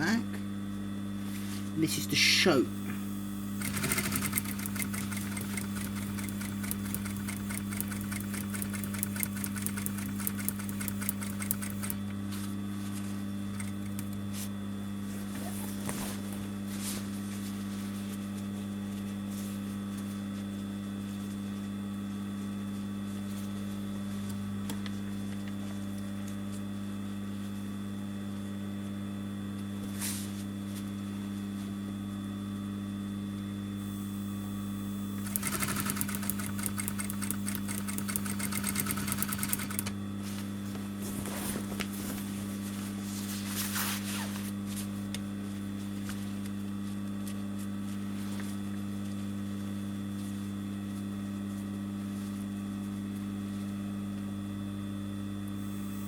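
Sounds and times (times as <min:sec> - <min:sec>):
sewing machine motor humming: 0:02.7 - 0:12.1, 0:13.5 - 0:14.2, 0:33.8 - 0:40.0
sewing machine stitching: 0:03.5 - 0:12.0, 0:13.6 - 0:14.1, 0:35.2 - 0:39.9
sewing machine clicks: 0:03.6 - 0:12.1, 0:13.5 - 0:14.1, 0:35.2 - 0:40.0.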